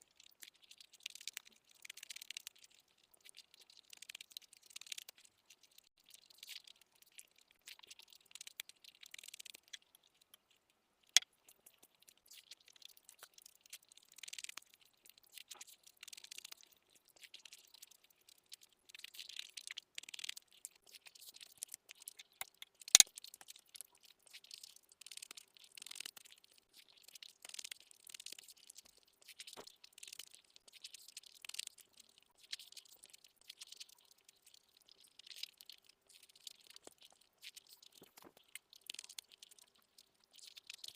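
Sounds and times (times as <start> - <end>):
wet chewing and mouth noises: 0.0 - 40.9.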